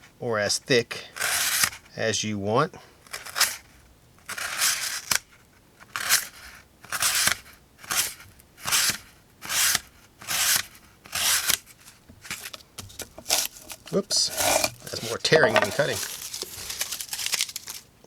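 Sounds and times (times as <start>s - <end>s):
knife slicing through paper: 1.2s - 1.8s, 4.3s - 5.2s, 5.9s - 17.9s.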